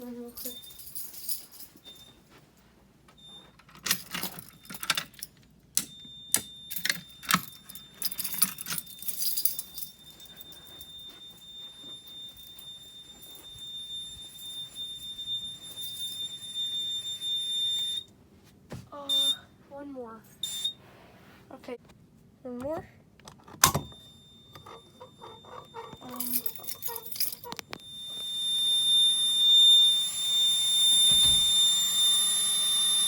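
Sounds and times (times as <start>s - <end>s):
high-pitched alarm beep tone: 5.8s - 18.1s, 19.0s - 19.5s, 20.4s - 20.8s, 23.8s - 33.0s.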